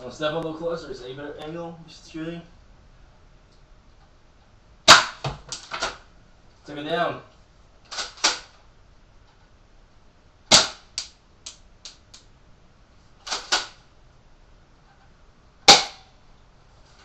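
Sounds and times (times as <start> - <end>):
airsoft shotgun cracks: 4.9 - 5.9, 7.9 - 8.5, 10.5 - 12.0, 15.7 - 16.1.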